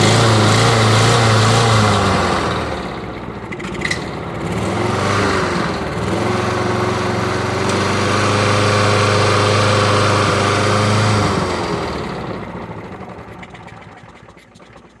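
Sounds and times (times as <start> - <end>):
lawn mower engine running: 0.0 - 15.0.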